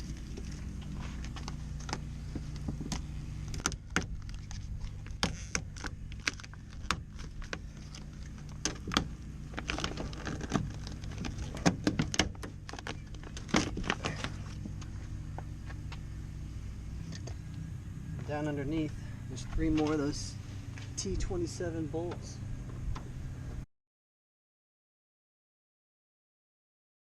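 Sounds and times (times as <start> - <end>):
paper crinkling: 0.0 - 14.9.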